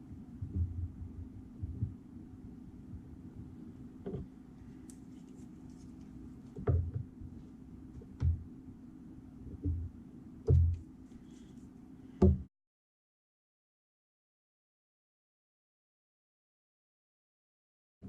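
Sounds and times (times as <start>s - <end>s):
steady low hum: 0.0s - 12.5s.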